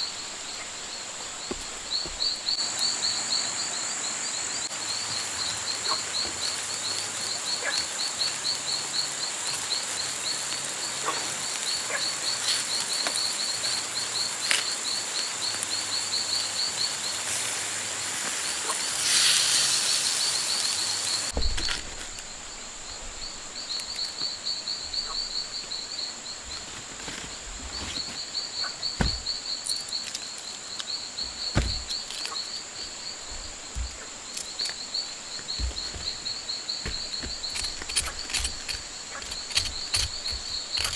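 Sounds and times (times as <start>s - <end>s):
high insect drone: 0.0s - 40.9s
light taps and knocks: 28.8s - 30.2s, 31.2s - 40.9s.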